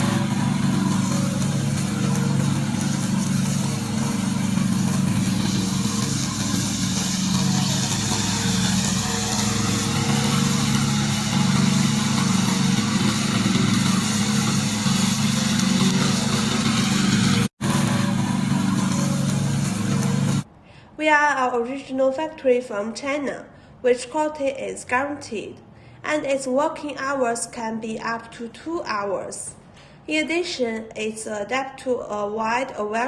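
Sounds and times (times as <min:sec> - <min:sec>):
lawn mower engine running: 0:00.0 - 0:20.5.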